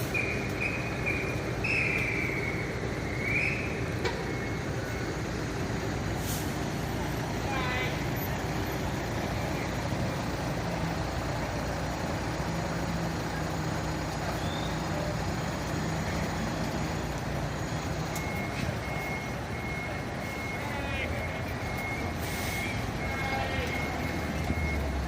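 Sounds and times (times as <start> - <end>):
diesel engine idling: 0.0 - 25.0
reversing alarm tone: 15.5 - 25.0.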